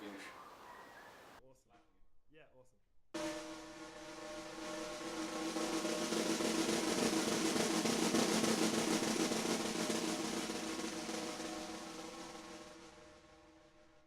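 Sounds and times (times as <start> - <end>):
snare drum roll: 3.2 - 14.0.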